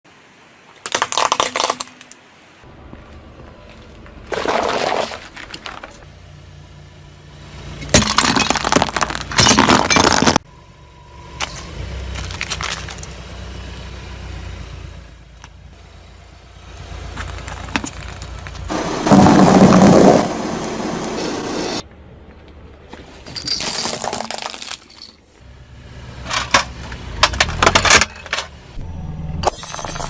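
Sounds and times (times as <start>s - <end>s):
tyre crushing objects: 4.2s - 6.1s, 7.9s - 10.4s, 17.1s - 20.8s
car engine running low: 5.6s - 22.9s, 25.4s - 29.5s.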